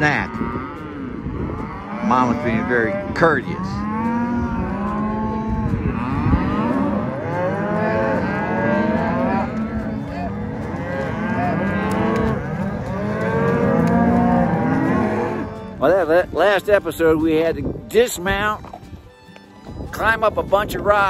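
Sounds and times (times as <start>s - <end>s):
cattle mooing: 0.0s - 15.8s.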